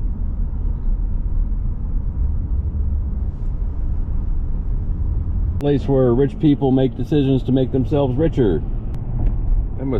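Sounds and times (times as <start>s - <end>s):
road noise: 0.0s - 9.9s.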